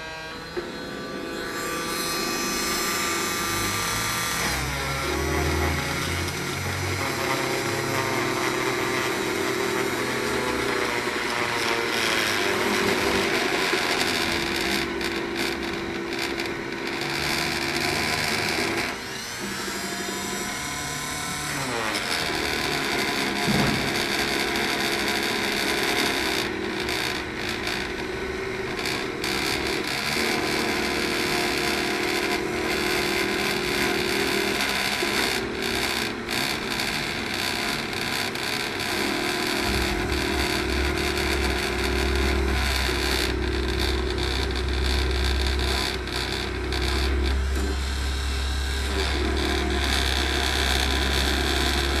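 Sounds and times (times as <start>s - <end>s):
axis motors pitched tones: 0.0s - 52.0s
spindle whirring: 0.0s - 52.0s.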